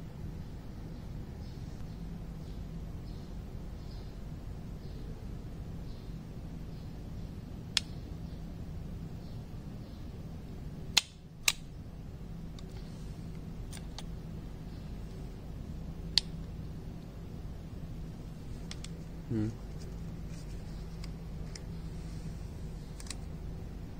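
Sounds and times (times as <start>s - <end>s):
steady low hum: 0.0s - 23.9s
sharp clicks: 11.0s - 11.7s.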